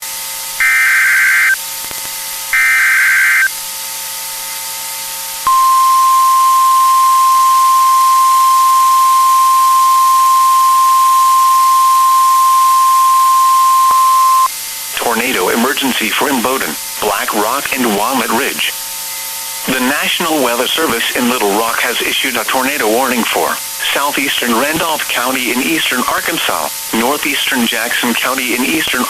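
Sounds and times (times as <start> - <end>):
radio static hiss: 0.6 - 3.6, 10.7 - 29.0
screeching data bursts: 0.6 - 3.6
steady warning alarm tone: 0.6 - 3.6, 5.5 - 14.5.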